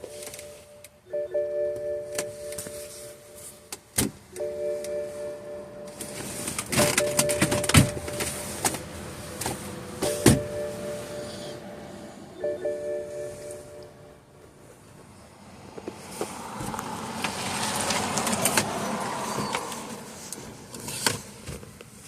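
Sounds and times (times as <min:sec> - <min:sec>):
steady electronic tone: 0:10.0 - 0:14.4.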